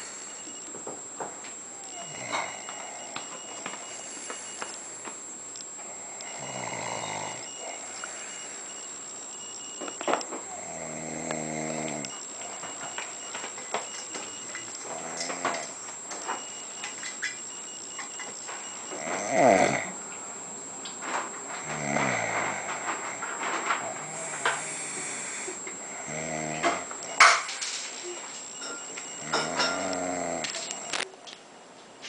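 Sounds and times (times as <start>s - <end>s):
person snoring: 1.8s - 4.2s, 5.8s - 8.7s, 10.4s - 12.1s, 19.0s - 20.0s, 21.6s - 27.2s, 29.2s - 30.9s.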